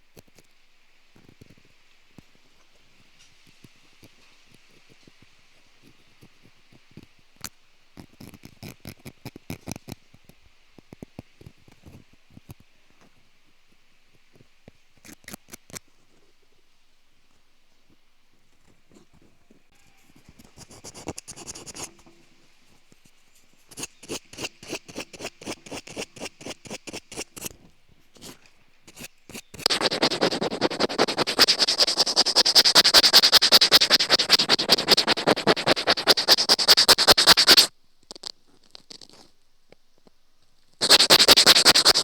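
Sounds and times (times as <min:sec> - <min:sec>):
rhythmic scratching: 0:28.9 - 0:37.7, 0:40.8 - 0:42.0.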